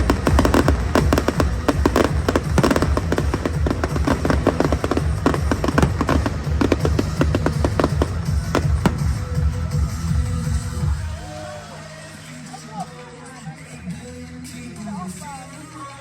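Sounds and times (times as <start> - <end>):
fireworks bangs and crackles: 0.0 - 11.2
loud music with heavy bass: 0.0 - 16.0.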